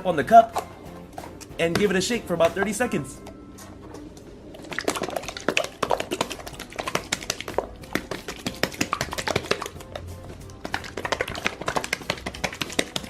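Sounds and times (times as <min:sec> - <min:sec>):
plastic shaker cup rattling: 0:04.7 - 0:10.0, 0:10.6 - 0:13.0.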